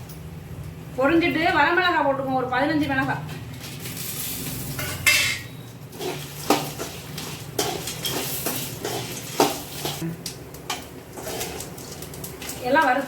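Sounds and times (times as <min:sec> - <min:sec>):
spices roasting in oil: 0:02.6 - 0:13.0
metal spoon scraping a pan: 0:03.6 - 0:10.0, 0:10.7 - 0:13.0
spoon clinking against pan: 0:04.8 - 0:05.6.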